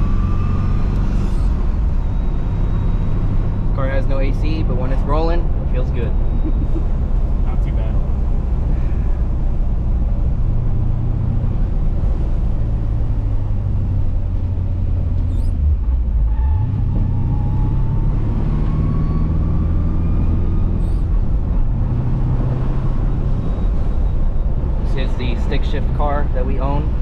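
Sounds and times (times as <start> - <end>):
car engine and road noise: 0.0 - 27.0.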